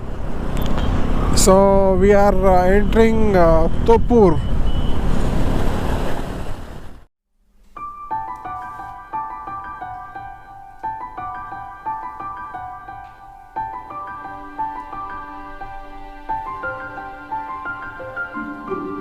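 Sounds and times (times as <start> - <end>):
wind and road noise: 0.0 - 7.1
soft piano music: 7.6 - 19.0.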